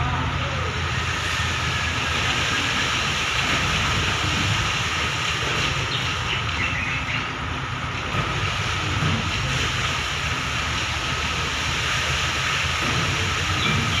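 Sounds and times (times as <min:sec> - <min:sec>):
diesel engines running: 0:00.0 - 0:14.0.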